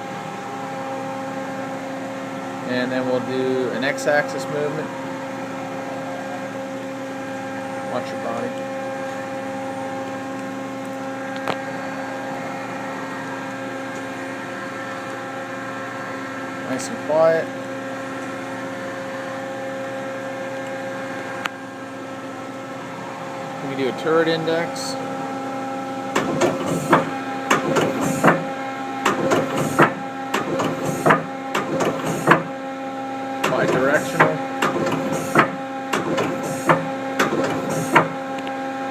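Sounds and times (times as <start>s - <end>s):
lathe humming: 17.7s - 38.9s
machine axis traversing: 26.2s - 28.4s.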